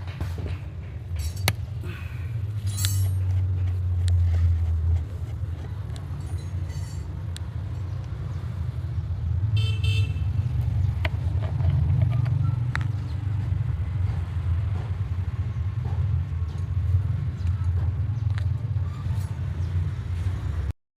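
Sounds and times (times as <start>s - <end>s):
car engine rumbling: 0.0s - 20.5s
high-pitched car horn toot: 9.6s - 10.4s.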